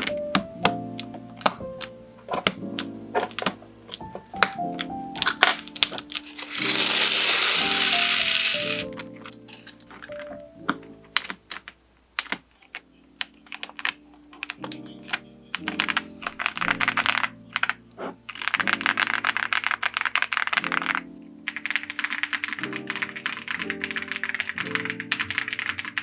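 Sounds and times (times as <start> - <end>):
mechanical keyboard typing: 6.2 - 8.9, 18.4 - 26.0.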